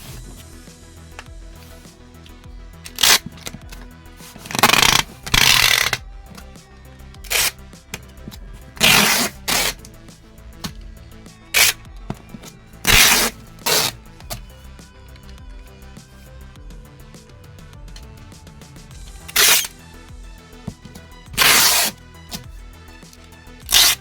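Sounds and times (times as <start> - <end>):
background music: 0.0 - 24.0
rasping packing tape or wrap: 2.9 - 3.5, 4.2 - 6.0, 7.3 - 7.6, 8.8 - 9.9, 11.6 - 11.8, 12.8 - 14.0, 19.3 - 19.7, 21.4 - 22.5, 23.7 - 24.0.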